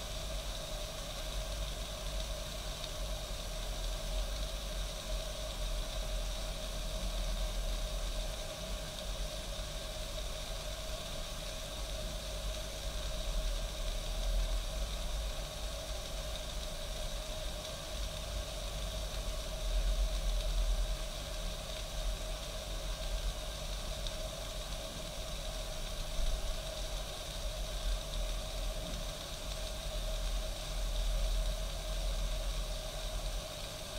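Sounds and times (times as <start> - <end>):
coffee machine hissing and boiling: 0.0 - 33.9.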